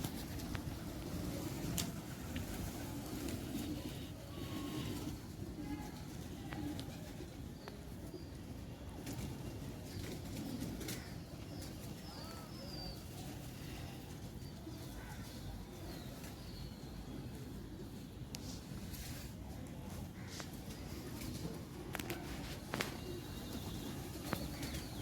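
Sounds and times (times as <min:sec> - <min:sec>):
pigeons cooing: 0:00.0 - 0:07.7, 0:18.9 - 0:25.0.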